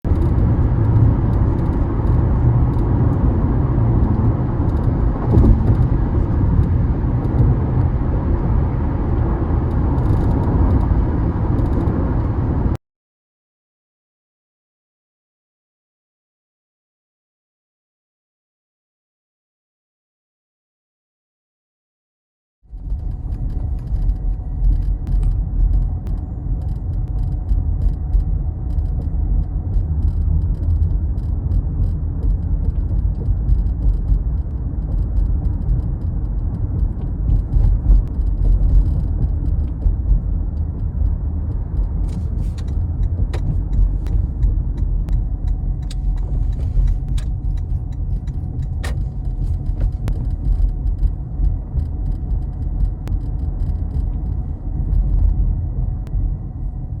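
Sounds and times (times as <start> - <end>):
low road rumble in car cabin: 0.0 - 12.8, 22.7 - 57.0
sharp rattling clicks: 23.2 - 55.2.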